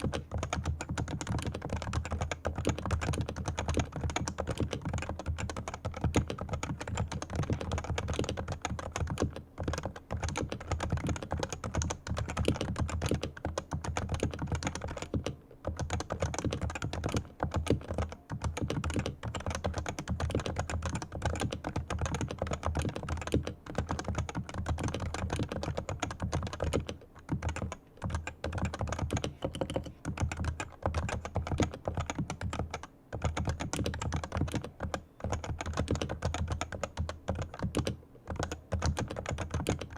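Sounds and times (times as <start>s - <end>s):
fast typing on keyboard: 0.0s - 39.9s.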